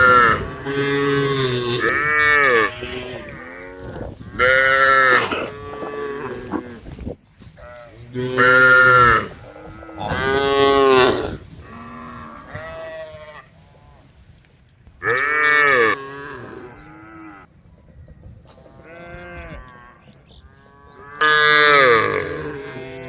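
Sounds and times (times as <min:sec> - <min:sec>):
cows mooing: 0:00.0 - 0:06.9, 0:15.0 - 0:17.5, 0:18.6 - 0:23.0.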